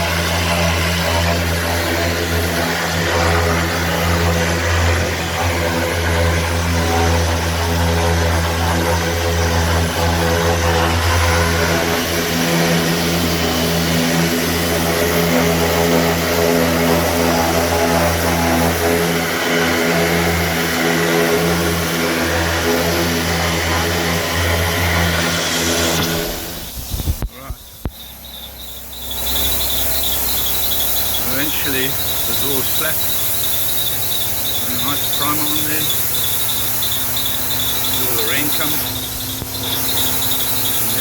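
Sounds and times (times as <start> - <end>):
compressor humming: 0.0 - 41.0
spray gun hissing: 11.0 - 41.0
thin hiss with high whistle: 26.0 - 41.0.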